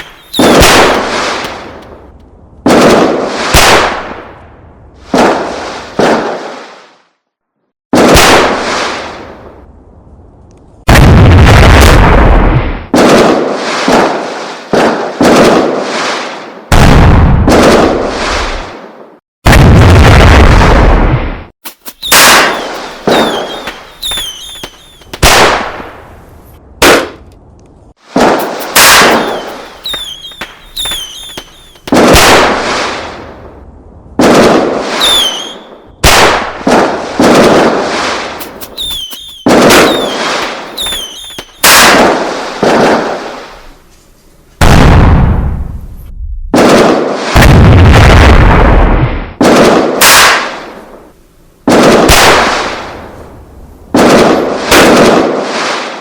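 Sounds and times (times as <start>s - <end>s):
loud echoing bangs: 0.0s - 1.9s, 28.2s - 32.8s.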